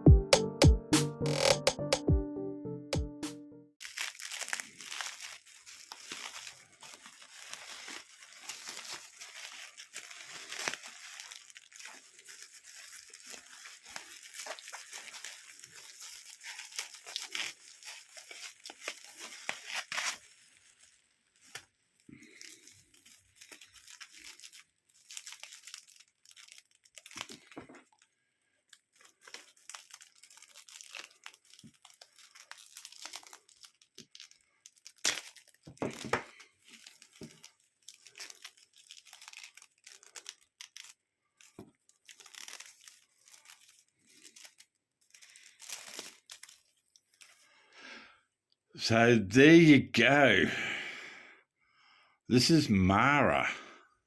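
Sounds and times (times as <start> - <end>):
packaging being torn and crinkled: 3.8 - 28.1, 28.7 - 47.6.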